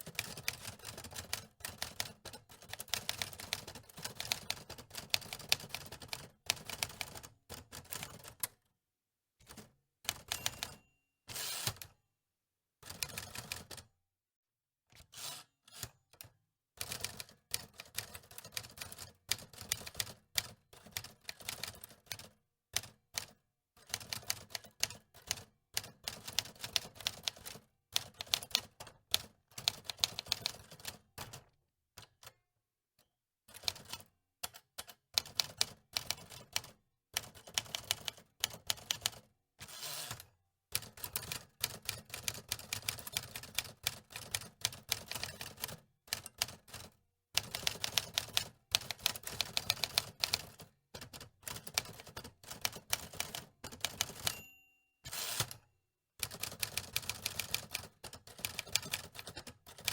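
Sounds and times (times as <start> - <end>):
typewriter keys clacking: 47.4 - 54.4, 56.2 - 59.9.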